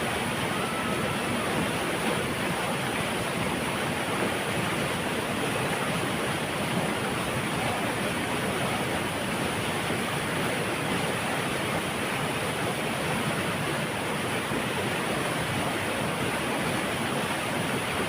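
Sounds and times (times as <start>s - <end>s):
water rushing through a dam: 0.0s - 18.0s.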